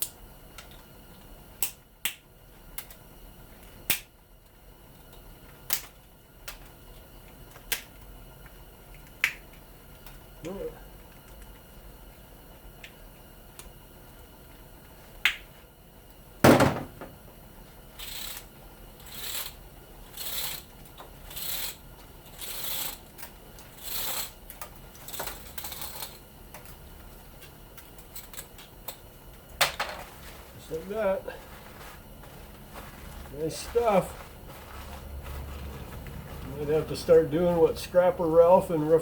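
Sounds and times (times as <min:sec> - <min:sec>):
sharp knock: 0:16.4 - 0:17.1
wire rustling and scraping: 0:19.0 - 0:26.2, 0:29.9 - 0:37.6.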